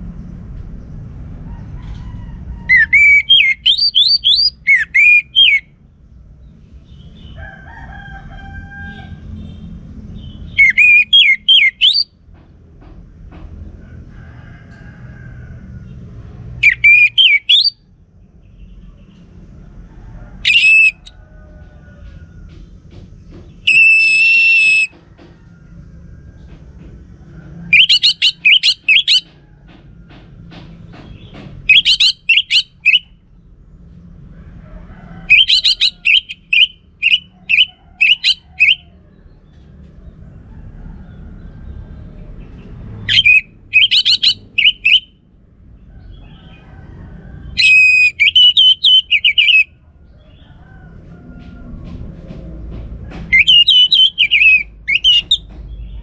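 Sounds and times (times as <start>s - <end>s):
thrush singing whistled notes: 2.7s - 5.7s, 10.5s - 12.1s, 16.6s - 17.8s, 20.4s - 21.1s, 23.7s - 24.9s, 27.7s - 29.2s, 31.7s - 33.1s, 35.3s - 38.8s, 43.1s - 45.1s, 47.6s - 49.7s, 53.3s - 55.4s.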